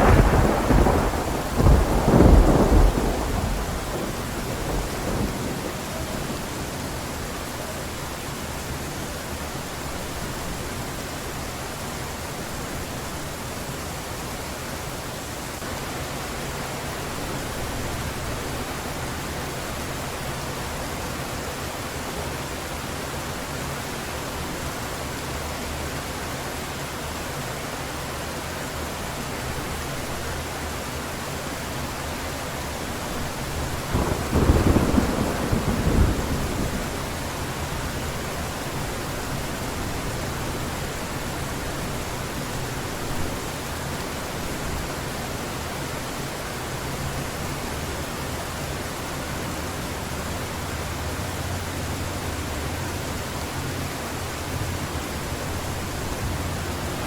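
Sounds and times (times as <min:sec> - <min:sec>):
rumbling thunderclap: 0:00.0 - 0:07.4, 0:33.6 - 0:40.4
heavy rain: 0:00.0 - 0:57.0.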